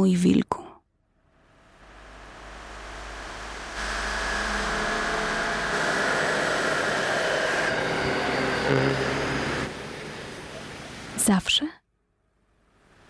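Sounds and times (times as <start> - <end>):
faint steady tones: 1.2 - 11.6
rushing static-like noise: 1.3 - 11.3, 12.5 - 13.0.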